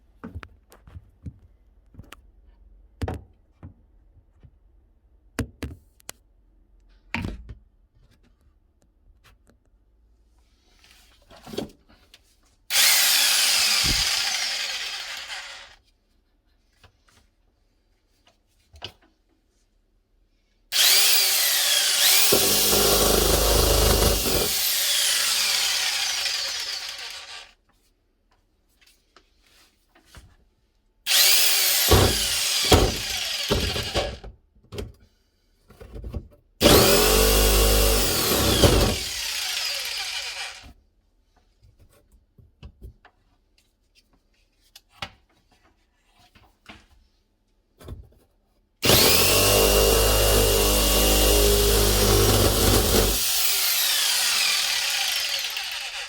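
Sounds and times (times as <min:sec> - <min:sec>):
jigsaw blade sawing wood: 0:12.7 - 0:15.8, 0:20.7 - 0:27.5, 0:31.1 - 0:34.2, 0:36.6 - 0:40.7, 0:48.8 - 0:56.0
jigsaw motor whine: 0:12.7 - 0:15.8, 0:20.7 - 0:27.5, 0:31.1 - 0:34.2, 0:36.6 - 0:40.7, 0:48.8 - 0:56.0.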